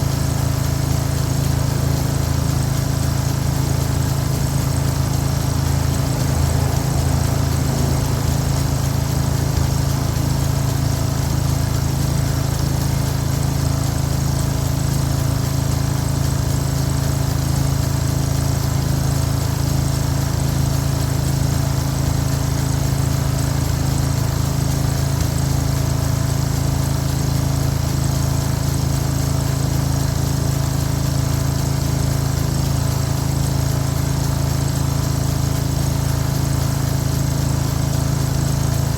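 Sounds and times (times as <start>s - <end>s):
small engine running steadily: 0.0s - 38.9s.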